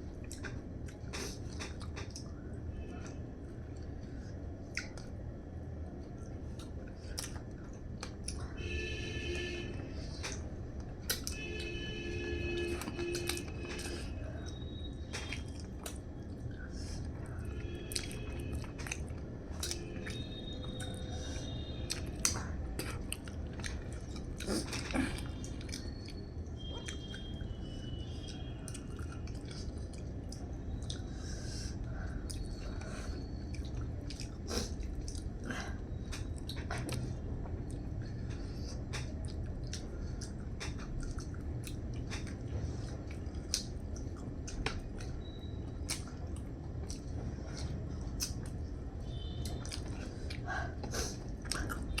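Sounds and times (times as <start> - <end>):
steady low hum: 0.0 - 52.0
person chewing: 15.2 - 21.0, 21.9 - 27.3, 28.2 - 31.2, 32.2 - 35.5, 36.1 - 52.0.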